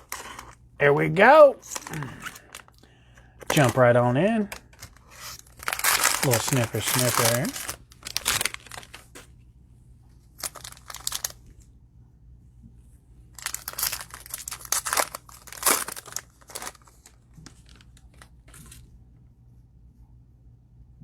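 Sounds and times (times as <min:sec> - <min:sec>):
cellophane tearing and crinkling: 0:00.0 - 0:00.6, 0:01.6 - 0:02.8, 0:03.4 - 0:09.3, 0:10.4 - 0:11.4, 0:13.4 - 0:18.8.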